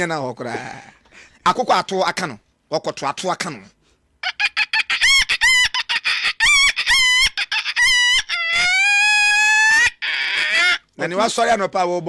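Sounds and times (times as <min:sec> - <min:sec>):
boy clucking like a chicken: 0:04.2 - 0:10.8
boy imitating rooster crow: 0:04.4 - 0:10.8.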